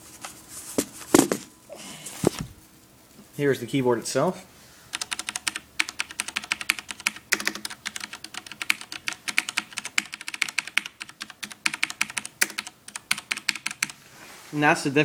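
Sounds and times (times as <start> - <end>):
mechanical keyboard clacking: 4.9 - 14.0.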